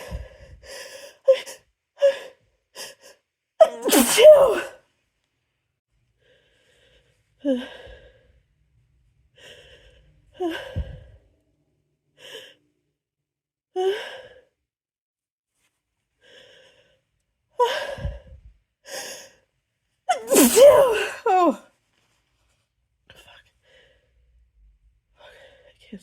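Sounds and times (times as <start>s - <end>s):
person sighing and gasping breaths: 0.0s - 3.2s, 9.4s - 11.2s, 17.6s - 19.4s.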